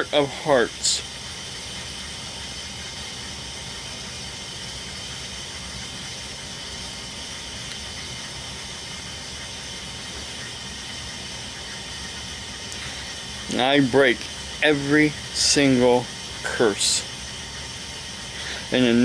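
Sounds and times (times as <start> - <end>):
steady machine hiss: 0.0 - 19.0.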